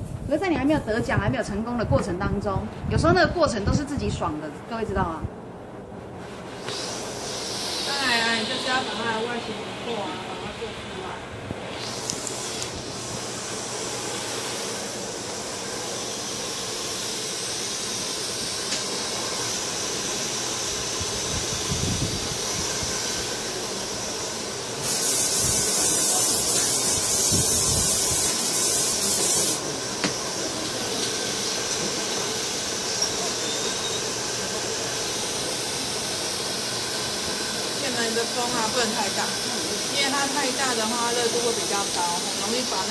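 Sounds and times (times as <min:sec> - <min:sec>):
hair spray hissing: 0:06.4 - 0:11.0, 0:11.6 - 0:42.9
hair dryer blowing: 0:06.4 - 0:42.9.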